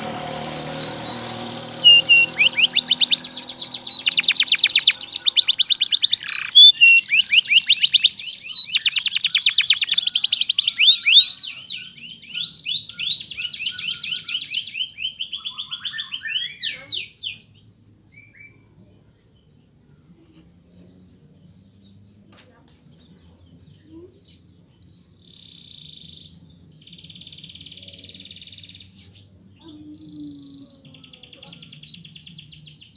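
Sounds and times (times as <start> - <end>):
canary singing trills: 0.0 - 18.7, 22.8 - 32.9.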